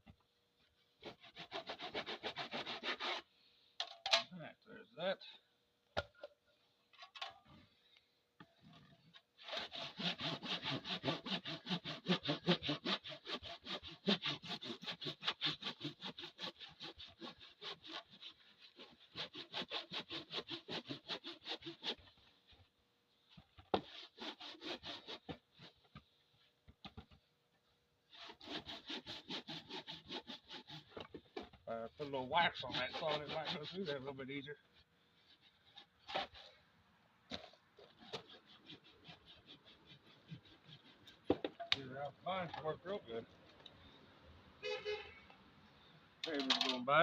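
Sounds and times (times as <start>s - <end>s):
hand saw cutting log: 1.0s - 3.3s, 8.7s - 22.7s, 23.3s - 26.1s, 28.1s - 36.6s, 37.3s - 41.8s, 46.2s - 46.8s.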